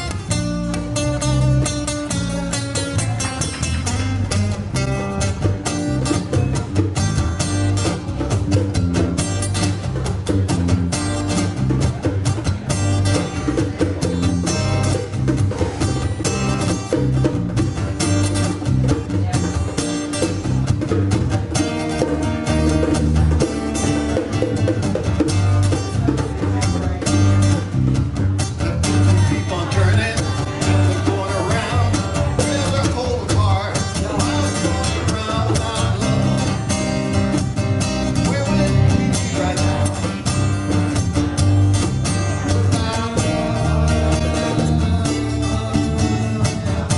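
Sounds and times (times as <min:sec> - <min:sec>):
live band playing: 0:00.0 - 0:46.9.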